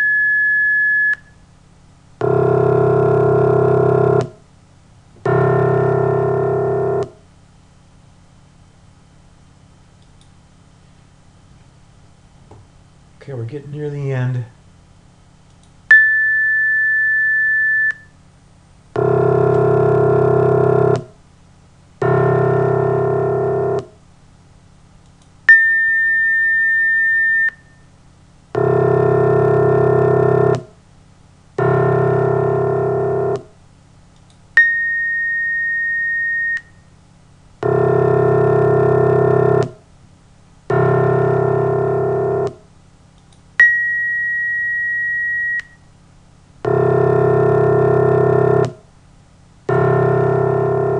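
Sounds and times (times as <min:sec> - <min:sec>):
high sine tone: 0:00.0 - 0:01.6, 0:02.2 - 0:04.4, 0:05.2 - 0:07.3, 0:15.9 - 0:18.2, 0:19.0 - 0:21.2, 0:22.0 - 0:24.0, 0:25.5 - 0:30.8, 0:31.6 - 0:33.6, 0:34.5 - 0:39.9, 0:40.7 - 0:42.7, 0:43.6 - 0:48.8, 0:49.7 - 0:50.9
buzzy low synthesized tone: 0:02.2 - 0:04.4, 0:05.2 - 0:07.2, 0:19.0 - 0:21.2, 0:22.0 - 0:24.0, 0:28.6 - 0:30.8, 0:31.6 - 0:33.5, 0:37.6 - 0:39.8, 0:40.7 - 0:42.7, 0:46.6 - 0:48.8, 0:49.7 - 0:50.9
click: 0:10.0 - 0:10.4, 0:15.5 - 0:15.8, 0:25.0 - 0:25.4, 0:34.2 - 0:34.4, 0:43.2 - 0:43.5.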